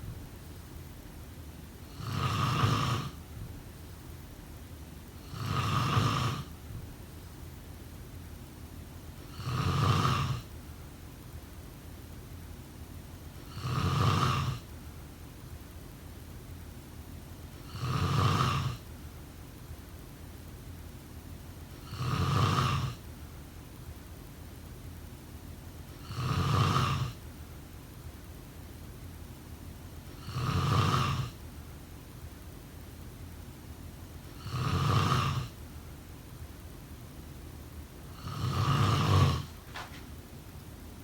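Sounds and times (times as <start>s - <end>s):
person snoring: 1.9s - 3.2s, 5.2s - 6.5s, 9.3s - 10.5s, 13.4s - 14.7s, 17.6s - 18.8s, 21.8s - 23.0s, 26.0s - 27.2s, 30.2s - 31.4s, 34.3s - 35.6s, 38.1s - 39.6s.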